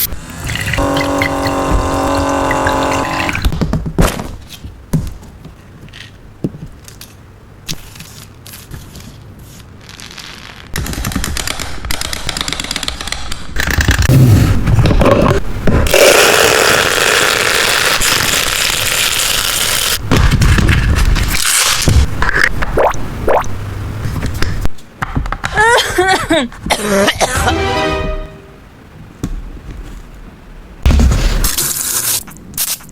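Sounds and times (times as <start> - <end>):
crackling hiss: 9.3 - 10.8.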